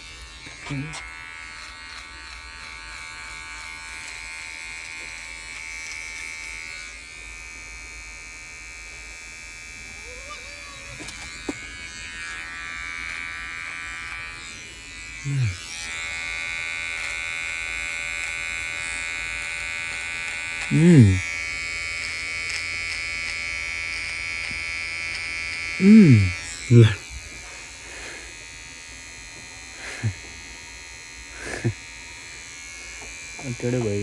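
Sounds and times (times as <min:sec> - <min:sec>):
electric shaver buzzing: 0:00.0 - 0:34.0
brief vocal sound: 0:20.7 - 0:21.2, 0:25.8 - 0:27.0.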